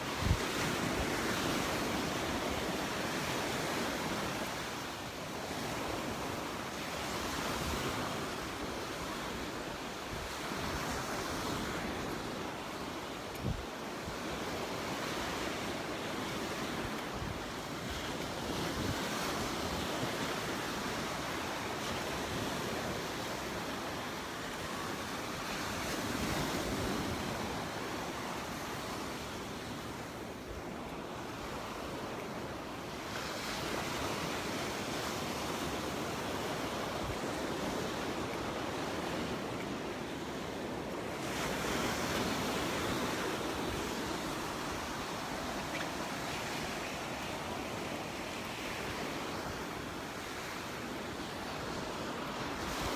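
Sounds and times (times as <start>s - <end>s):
wind buffeting microphone: 0.0s - 4.2s.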